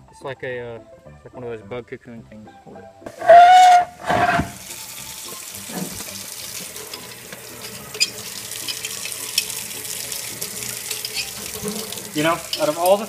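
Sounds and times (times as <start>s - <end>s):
tap running into sink: 4.0s - 13.0s.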